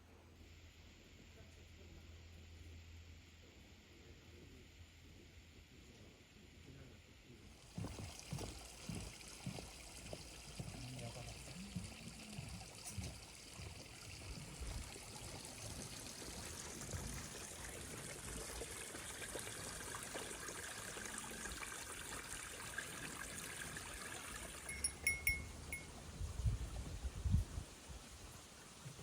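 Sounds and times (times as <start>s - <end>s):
stream of water trickling: 7.5s - 29.0s
high bell-like rings: 24.7s - 25.9s.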